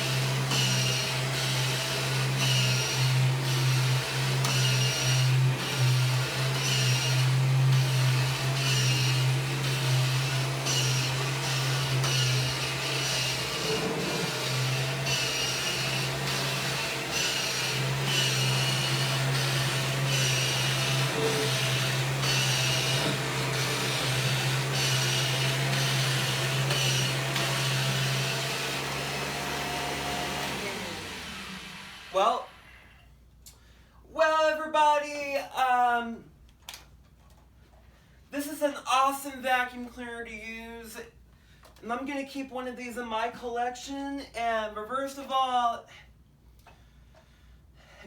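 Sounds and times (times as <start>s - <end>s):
vacuum cleaner running: 0.0s - 32.9s.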